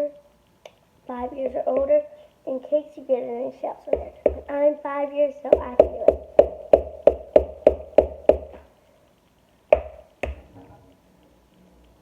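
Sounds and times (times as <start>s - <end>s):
egg tapping on bowl rim: 4.0s - 4.5s, 5.5s - 8.6s, 9.7s - 10.5s
hard knocks: 4.0s - 4.5s, 5.5s - 8.6s, 9.7s - 10.5s.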